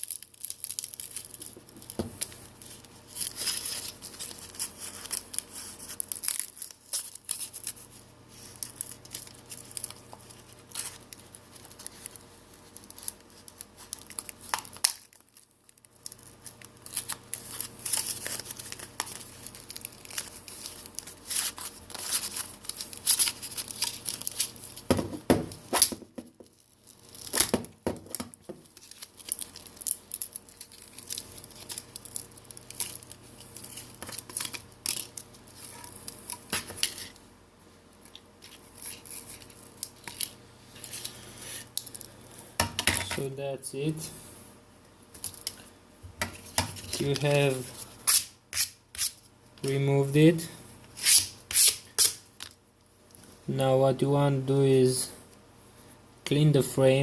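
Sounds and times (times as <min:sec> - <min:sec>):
adhesive crackling and tearing: 0:00.0 - 0:07.8, 0:08.4 - 0:24.8, 0:28.6 - 0:37.1.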